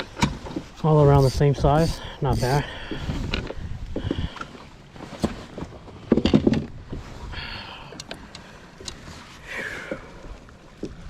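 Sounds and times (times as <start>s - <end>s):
knocks and rattles in boat: 2.7s - 7.1s.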